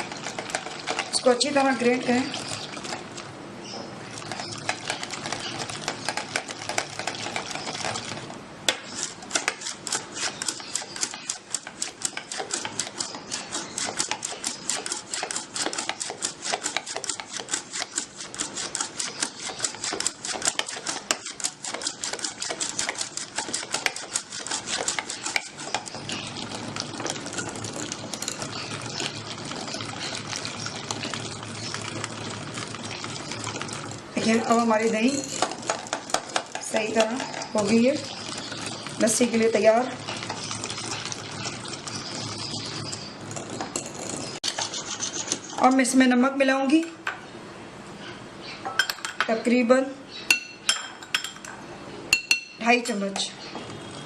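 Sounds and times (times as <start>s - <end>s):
whisk clicking against container: 8.7s - 32.0s.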